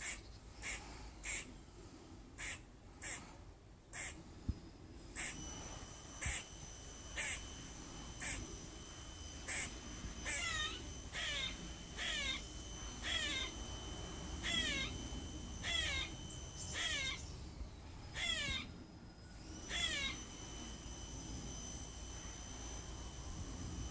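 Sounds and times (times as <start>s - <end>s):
squirrel chirping call: 0.0s - 1.5s, 2.4s - 3.2s, 3.9s - 4.2s, 5.1s - 5.6s, 6.2s - 6.5s, 7.1s - 7.5s, 8.2s - 8.4s, 9.4s - 13.7s, 14.4s - 18.7s, 19.3s - 20.7s.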